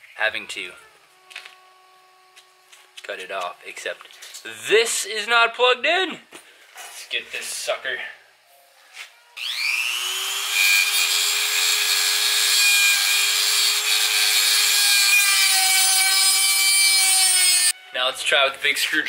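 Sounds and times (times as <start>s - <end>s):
cordless power tool cutting bolt: 9.4s - 17.7s.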